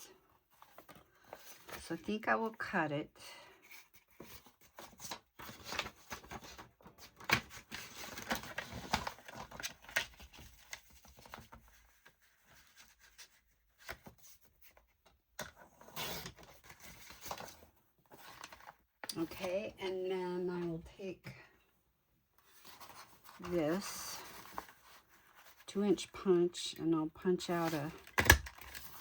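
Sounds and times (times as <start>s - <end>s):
paper rustling: 3.7s - 19.5s, 22.4s - 26.4s, 27.5s - 29.0s.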